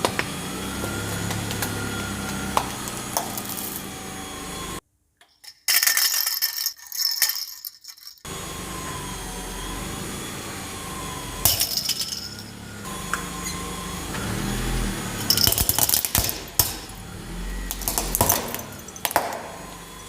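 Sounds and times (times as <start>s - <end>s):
tyre crushing brittle objects: 0.0s - 3.9s, 15.2s - 17.0s, 17.6s - 19.6s
car engine humming: 0.0s - 4.8s, 8.3s - 20.0s.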